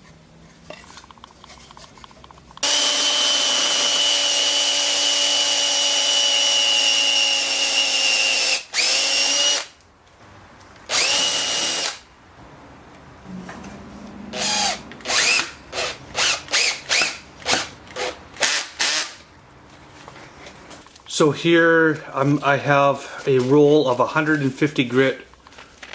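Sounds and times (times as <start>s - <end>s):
power drill running: 2.6s - 9.8s, 10.9s - 12.1s, 14.3s - 19.2s.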